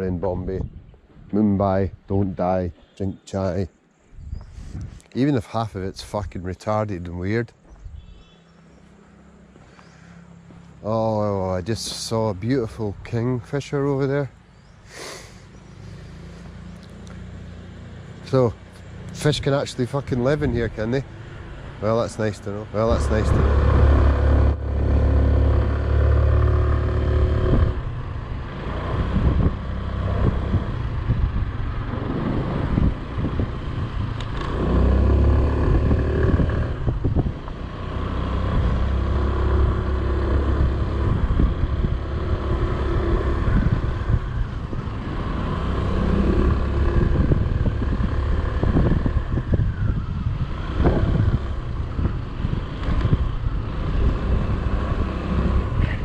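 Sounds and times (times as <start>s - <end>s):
wind noise on microphone: 0.0s - 2.8s, 4.1s - 5.2s, 7.7s - 8.4s, 22.8s - 56.0s
motorbike engine running: 38.6s - 54.6s.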